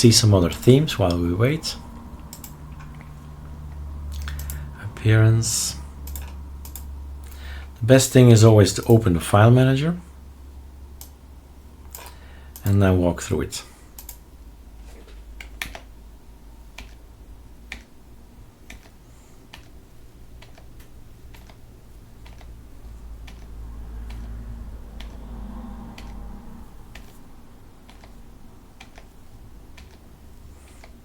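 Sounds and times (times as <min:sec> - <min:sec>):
low steady hum: 0:00.0 - 0:31.0
computer key clicks: 0:02.3 - 0:03.1, 0:04.2 - 0:04.6, 0:06.0 - 0:06.9, 0:14.0 - 0:14.2.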